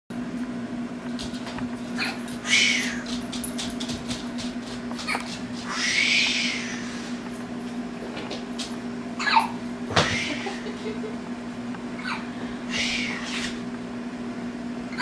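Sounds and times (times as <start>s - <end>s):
steady low hum: 0.1s - 15.0s
baby hiccupping: 9.2s - 9.6s, 12.0s - 12.3s.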